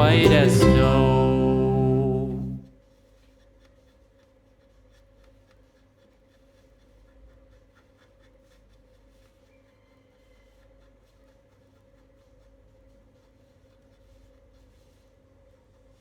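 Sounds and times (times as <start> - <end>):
faint steady hum: 0.0 - 2.7.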